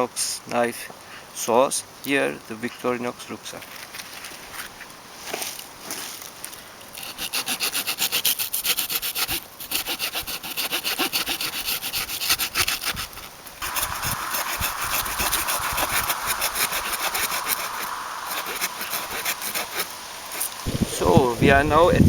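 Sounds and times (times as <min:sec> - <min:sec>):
small saw cutting wood: 0:06.9 - 0:20.7.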